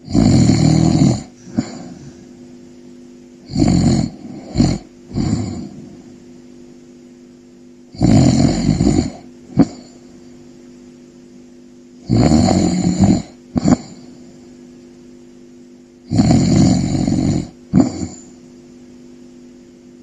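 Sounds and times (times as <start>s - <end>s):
person snoring: 0.0s - 2.4s, 3.4s - 6.1s, 7.9s - 10.0s, 12.0s - 14.3s, 16.1s - 18.4s.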